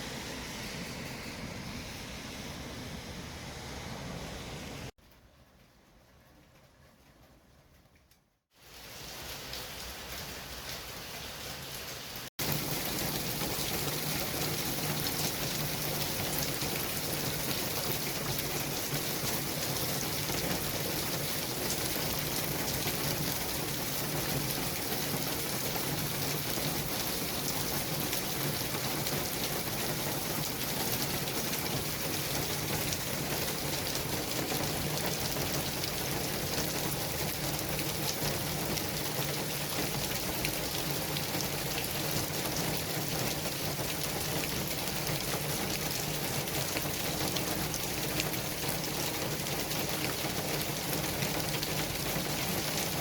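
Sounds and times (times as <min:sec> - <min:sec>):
city traffic hiss: 0:00.0 - 0:07.0.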